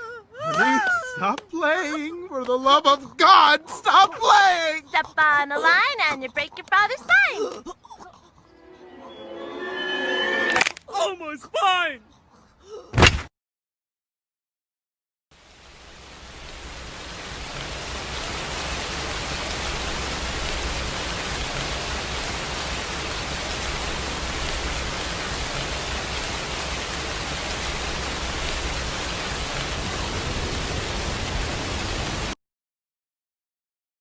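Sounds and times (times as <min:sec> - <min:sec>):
steady rushing noise: 0:16.7 - 0:32.4.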